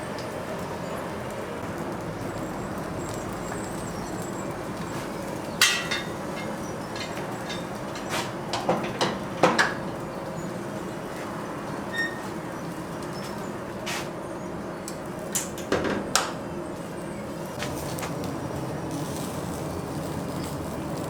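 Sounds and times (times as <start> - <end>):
utensils and dishes clinking: 4.8 - 10.2.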